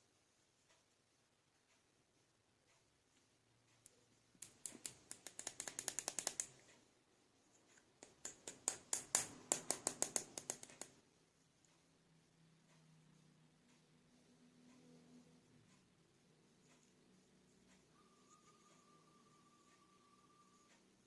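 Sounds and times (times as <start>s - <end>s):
plastic toys clicking: 4.4s - 6.6s.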